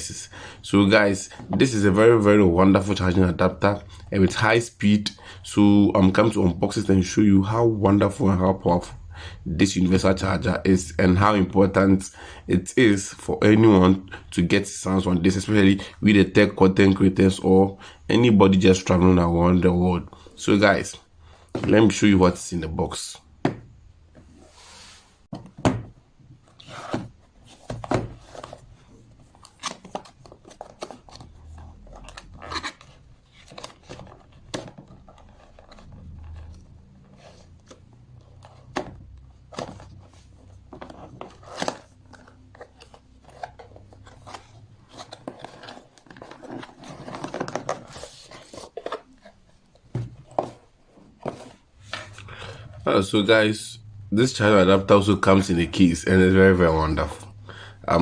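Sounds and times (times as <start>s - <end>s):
packaging rustling and scraping: 26.4s - 52.8s.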